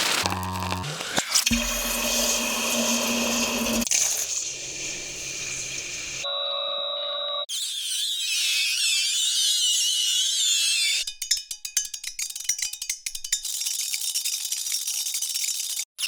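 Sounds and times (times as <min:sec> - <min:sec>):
fine high crackling sizzle: 0:00.0 - 0:06.3
high sizzling with squeals: 0:00.0 - 0:06.3, 0:07.4 - 0:16.0.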